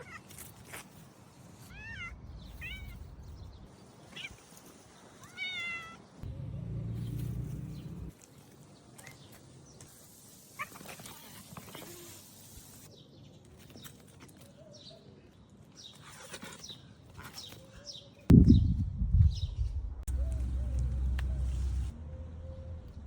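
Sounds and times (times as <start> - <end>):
cat meowing: 5.2 - 6.0
low steady rumble: 6.2 - 8.1.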